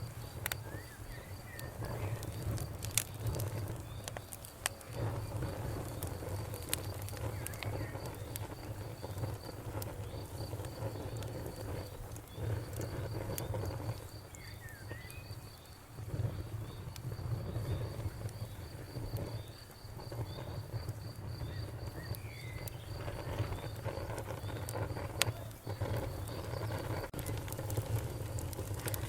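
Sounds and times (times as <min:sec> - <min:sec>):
campfire crackling: 0:00.0 - 0:29.0
crickets chirping: 0:00.0 - 0:29.0
bird chirps: 0:14.3 - 0:15.5.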